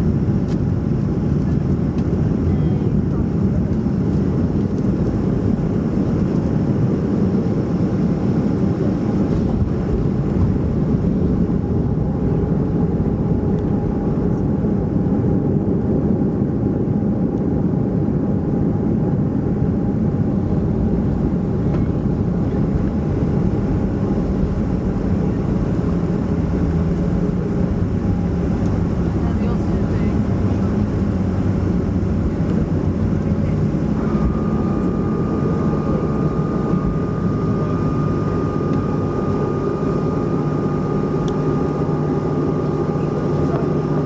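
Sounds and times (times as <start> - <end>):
jet engines rumbling: 0.0 - 44.0
faint hum: 20.3 - 44.0.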